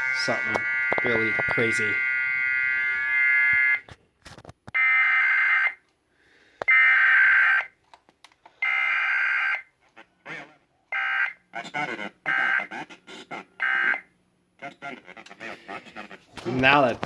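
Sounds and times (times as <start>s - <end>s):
two-tone electronic screech: 0.0s - 3.8s.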